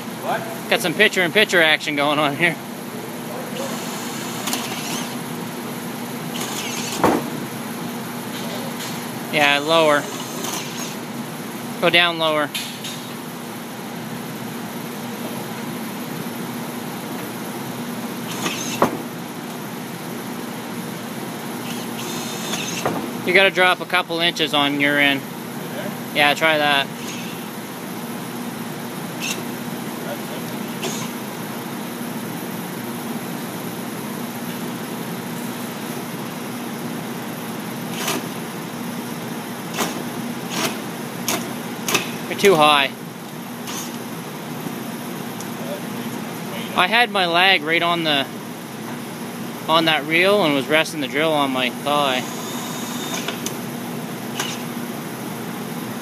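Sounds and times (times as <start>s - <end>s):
cordless drill drilling metal: 3.7s - 5.2s, 6.3s - 7.1s, 9.8s - 11.0s, 18.3s - 18.8s, 21.6s - 22.8s, 26.9s - 27.5s, 29.2s - 29.5s, 30.8s - 31.2s, 43.6s - 44.0s, 52.1s - 53.5s.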